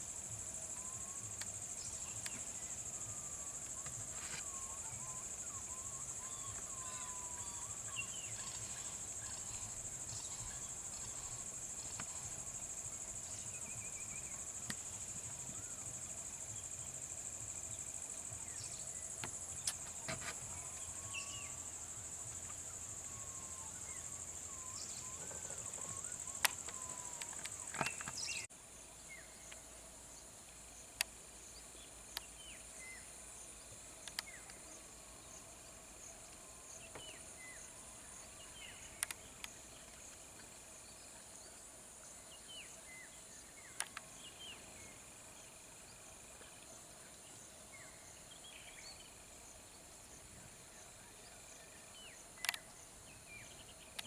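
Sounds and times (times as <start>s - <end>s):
high-pitched insect drone: 0.0s - 28.5s.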